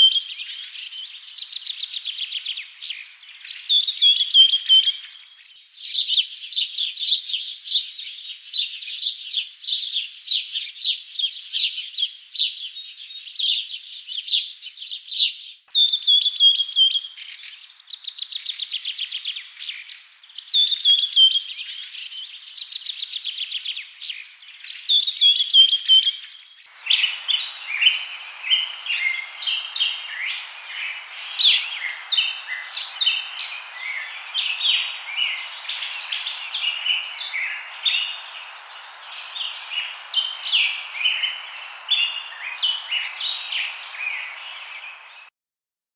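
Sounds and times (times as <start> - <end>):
faint hiss: 26.7 - 45.3
songbirds chirping and trilling: 26.7 - 45.3.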